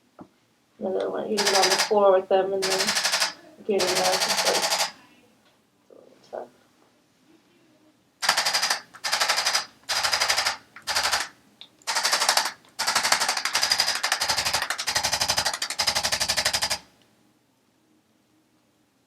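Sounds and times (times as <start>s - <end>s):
motorized percussion rattling: 1.4s - 2.0s, 2.6s - 5.0s, 8.2s - 11.3s, 11.9s - 16.9s.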